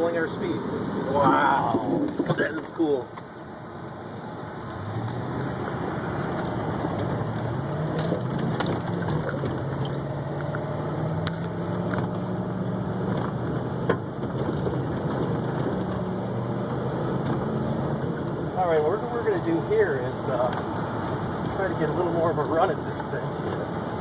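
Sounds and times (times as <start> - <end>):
truck knocks and rattles: 6.2 - 12.2, 13.0 - 18.4.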